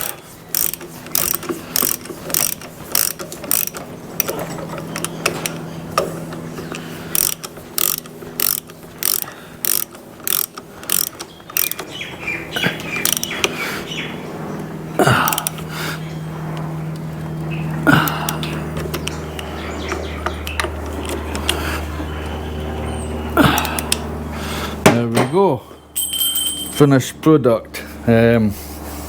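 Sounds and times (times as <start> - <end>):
socket ratchet clicking: 0.0 - 12.0, 12.8 - 13.6, 15.3 - 15.6
steady low hum: 0.0 - 29.0.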